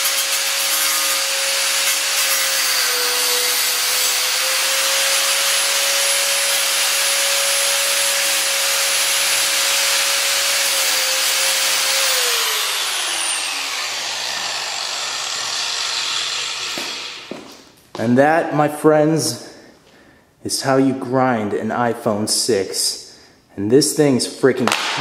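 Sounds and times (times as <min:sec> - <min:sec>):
angle grinder motor whine: 0:06.8 - 0:17.5.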